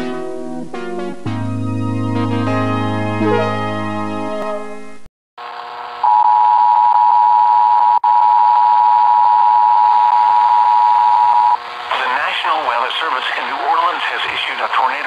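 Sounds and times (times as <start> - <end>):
broadcast hiss: 11.5 - 15.0.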